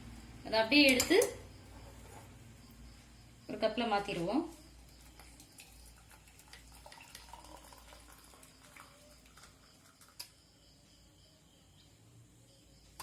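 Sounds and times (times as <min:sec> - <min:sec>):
liquid pouring into a cup: 0:04.7 - 0:10.5.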